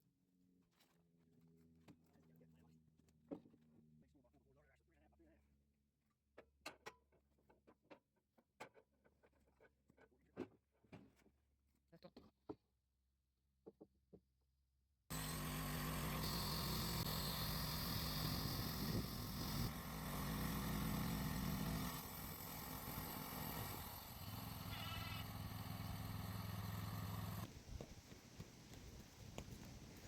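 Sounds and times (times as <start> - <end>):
small engine running: 15.1 - 27.5.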